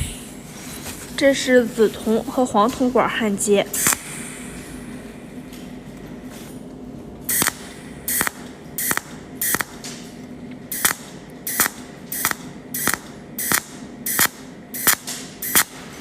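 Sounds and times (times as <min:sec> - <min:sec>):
welding machine snapping pulses: 0:03.7 - 0:04.8, 0:07.2 - 0:16.0.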